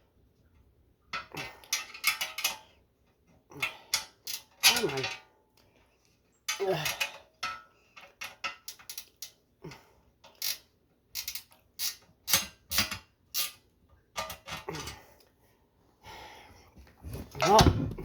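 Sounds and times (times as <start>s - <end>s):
hand ratchet clicking: 11.2s - 12.8s.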